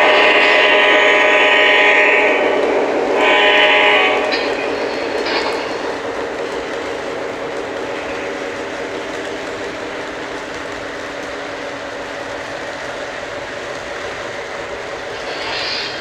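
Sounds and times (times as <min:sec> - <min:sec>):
model train horn blasts: 0:00.0 - 0:05.0
train running rumble: 0:00.0 - 0:16.0.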